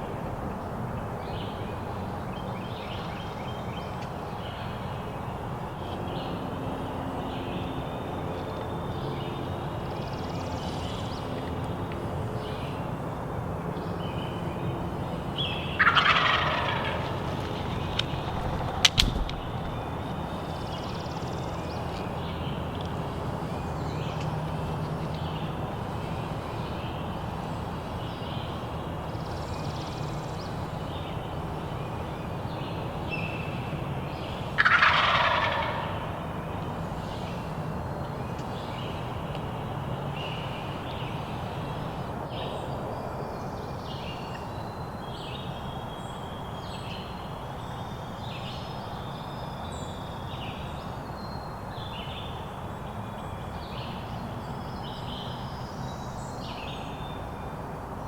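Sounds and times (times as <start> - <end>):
turkey gobbling: 15.8 - 19.9, 34.6 - 36.0.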